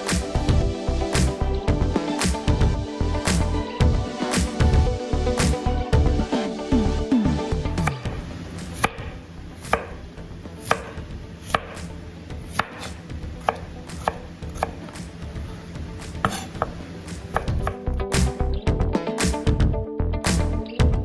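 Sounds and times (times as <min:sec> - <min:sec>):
knife chopping on cutting board: 0:07.8 - 0:10.0, 0:10.6 - 0:15.0, 0:16.2 - 0:17.8.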